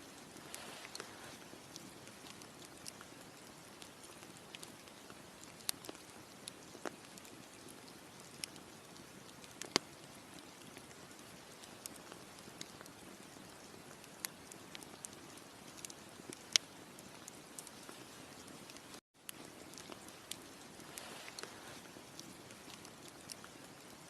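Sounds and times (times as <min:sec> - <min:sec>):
campfire crackling: 0:00.0 - 0:24.0.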